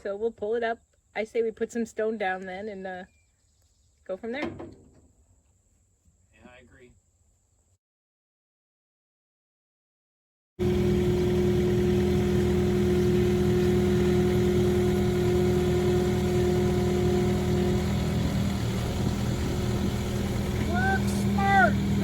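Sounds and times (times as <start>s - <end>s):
engine running steadily: 10.6s - 22.0s.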